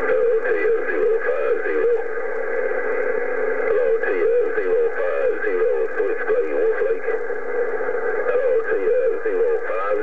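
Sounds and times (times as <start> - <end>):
garbled voices over tinny radio: 0.0 - 2.2, 3.6 - 7.3, 8.2 - 10.0.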